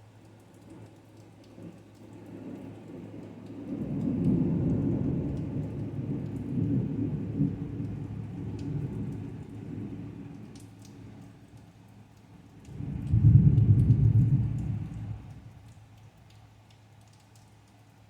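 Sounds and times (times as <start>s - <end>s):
thunder rumbling: 2.5s - 10.5s, 12.6s - 15.7s.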